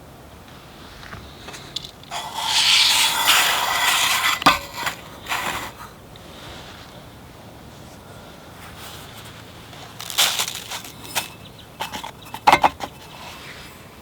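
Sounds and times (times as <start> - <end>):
short scrapes: 1.4 - 6.9, 8.7 - 13.8
rasping rub: 1.6 - 5.9, 10.0 - 13.6.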